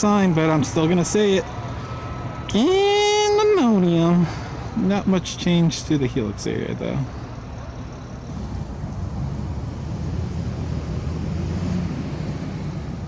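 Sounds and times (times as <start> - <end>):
motor vehicle rumble: 8.3 - 13.0.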